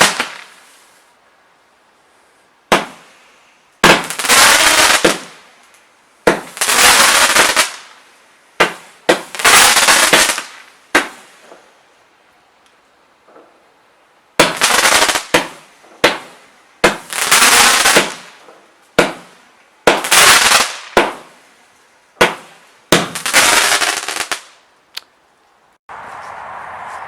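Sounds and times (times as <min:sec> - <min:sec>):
firework bangs: 0:00.0 - 0:00.8, 0:02.7 - 0:03.2, 0:03.8 - 0:05.5, 0:06.2 - 0:08.0, 0:08.6 - 0:11.7, 0:14.4 - 0:21.4, 0:22.2 - 0:24.6
rushing hiss of fireworks: 0:00.0 - 0:12.2, 0:13.2 - 0:24.7
small firework pops: 0:08.6 - 0:11.7.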